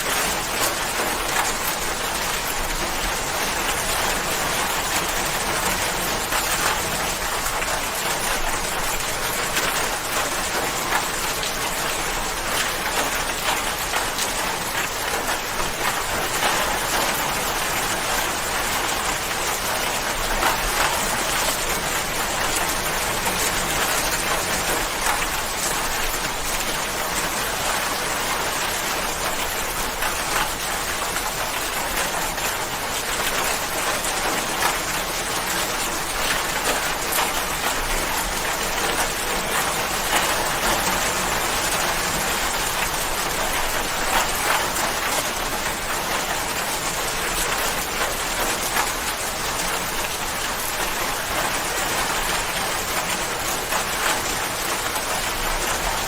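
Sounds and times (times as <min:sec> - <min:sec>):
rain pattering on a surface: 0:00.0 - 0:56.0.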